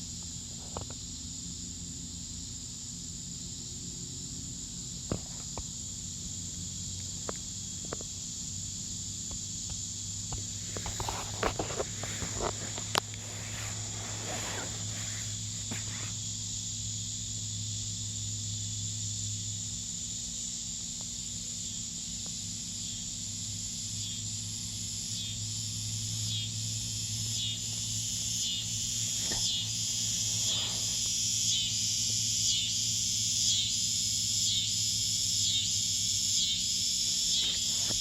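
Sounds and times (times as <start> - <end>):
insect chorus drone: 0.0 - 38.0.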